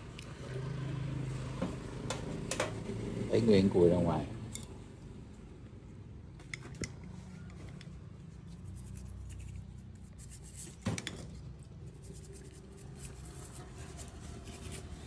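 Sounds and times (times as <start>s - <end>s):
tools scraping and clicking: 8.6s - 15.0s.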